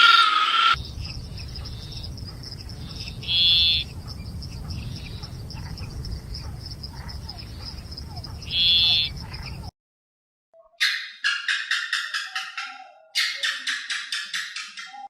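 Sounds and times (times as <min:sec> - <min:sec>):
faint chirps: 0:00.7 - 0:09.7
high insect trill: 0:00.7 - 0:09.7
low background rumble: 0:00.8 - 0:09.7.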